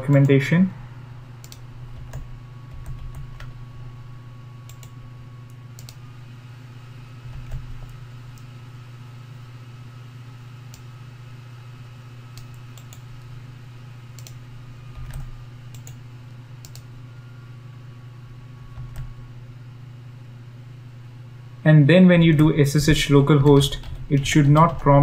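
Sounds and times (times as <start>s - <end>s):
low electrical hum: 0.0s - 25.0s
computer keys clicking: 1.4s - 3.6s, 4.6s - 6.0s, 7.3s - 8.5s, 12.3s - 13.3s, 14.1s - 16.0s, 16.6s - 16.9s, 18.7s - 19.1s.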